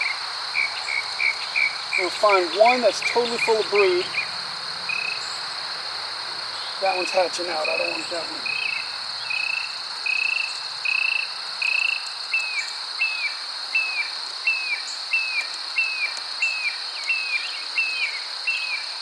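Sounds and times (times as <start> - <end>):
high insect drone: 0.0 - 19.0.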